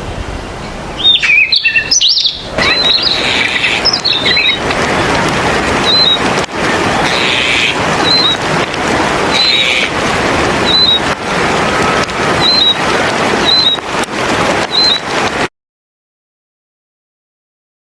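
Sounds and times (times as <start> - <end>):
loud steady rushing hiss: 0.0 - 15.5
bird giving high chirps: 1.0 - 4.6, 5.8 - 6.2, 7.0 - 8.4, 10.6 - 11.0, 14.7 - 15.0.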